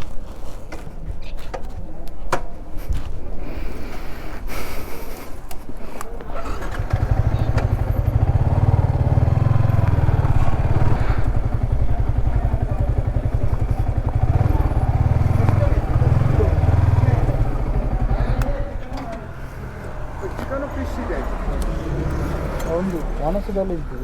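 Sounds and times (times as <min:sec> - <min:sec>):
motorcycle engine running: 0:06.3 - 0:24.0.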